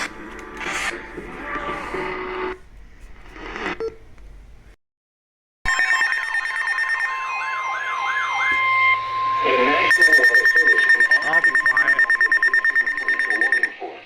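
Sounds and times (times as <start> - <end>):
siren-like wailing tone: 5.7 - 14.0
steady high alert tone: 5.7 - 14.0.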